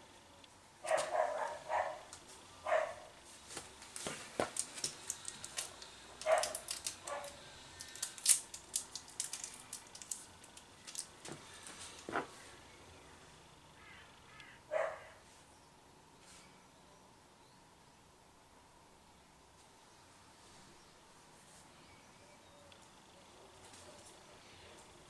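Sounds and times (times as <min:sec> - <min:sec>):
dog barking: 0:00.8 - 0:03.2, 0:06.2 - 0:07.4, 0:14.7 - 0:15.2.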